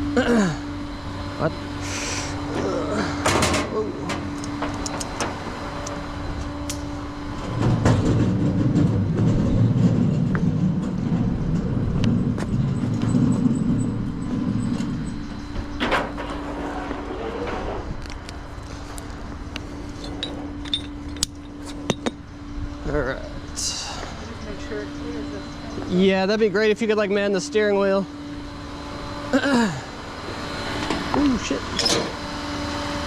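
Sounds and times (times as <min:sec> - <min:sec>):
low rumble: 0:00.0 - 0:31.7
truck engine humming: 0:00.0 - 0:33.0.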